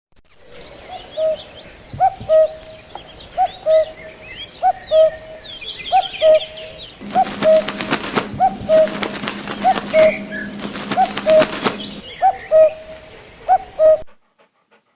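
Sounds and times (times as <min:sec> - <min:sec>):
steady low hum: 0:07.0 - 0:12.0
small birds chirping: 0:07.0 - 0:12.1.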